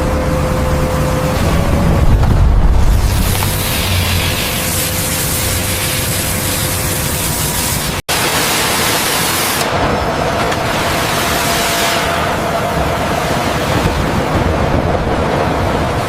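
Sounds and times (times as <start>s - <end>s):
faint hum: 0.0s - 7.8s
loud rushing noise: 0.2s - 16.0s.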